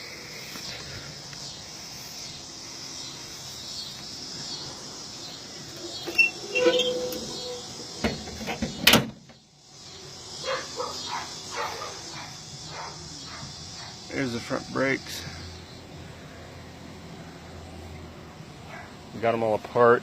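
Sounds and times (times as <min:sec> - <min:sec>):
insects droning: 0:00.0 - 0:20.0
short squeak: 0:06.0 - 0:07.7.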